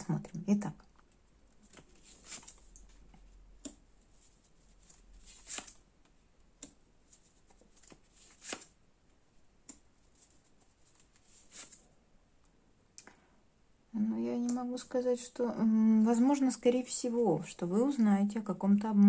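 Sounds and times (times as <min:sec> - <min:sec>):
cards slapping and swishing: 0:01.6 - 0:03.0, 0:04.1 - 0:05.8, 0:06.6 - 0:08.8, 0:10.0 - 0:11.8.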